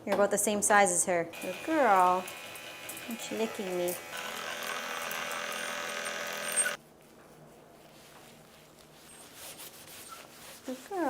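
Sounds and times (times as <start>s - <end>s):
small electric motor whirring: 1.3s - 6.8s.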